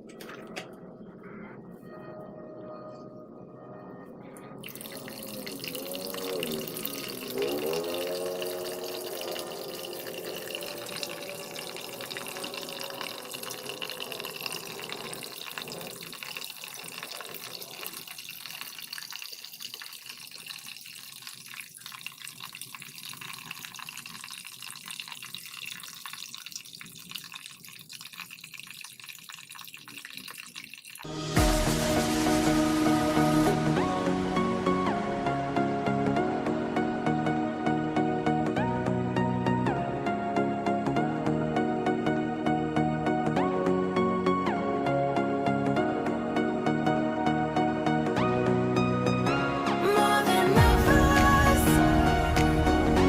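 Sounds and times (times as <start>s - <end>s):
wavering gliding tone: 0.0s - 16.0s
water running and splashing: 4.6s - 32.7s.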